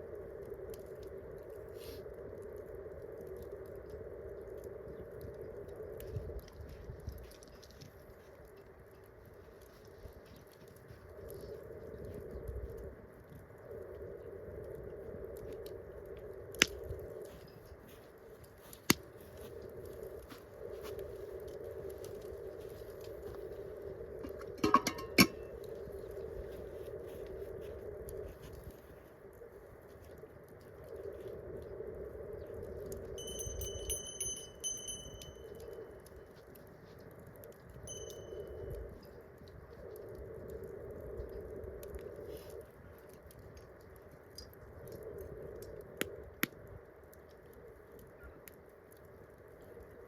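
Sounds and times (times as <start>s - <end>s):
campfire crackling: 0.0s - 50.0s
sharp pops from burning wood: 16.5s - 17.0s, 18.6s - 19.4s
high steady whistle: 33.2s - 35.7s.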